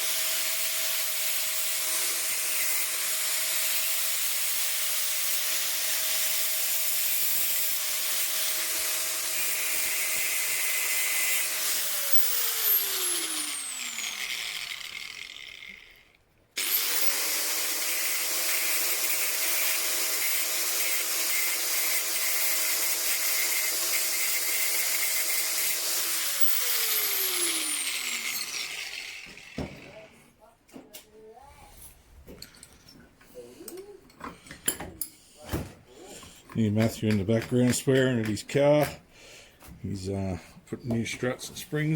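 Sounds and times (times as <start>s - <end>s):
power tool cutting metal: 0.0s - 16.0s, 16.6s - 30.1s.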